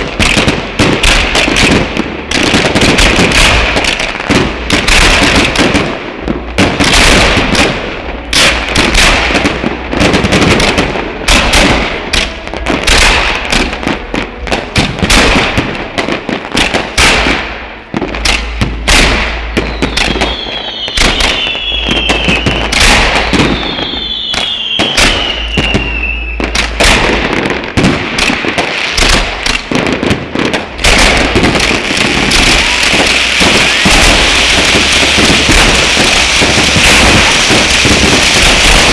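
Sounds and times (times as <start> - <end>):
fireworks bangs and crackles: 0.0 - 38.9
falling firework whistles: 19.5 - 26.8, 32.1 - 38.9.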